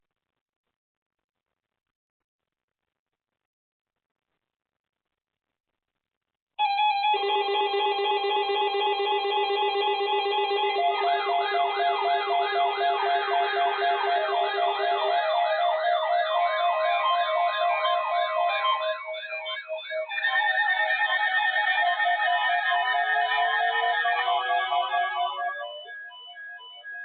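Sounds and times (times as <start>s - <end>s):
yelp siren: 6.6s - 27.0s
pulsing electronic beeps: 7.1s - 20.4s.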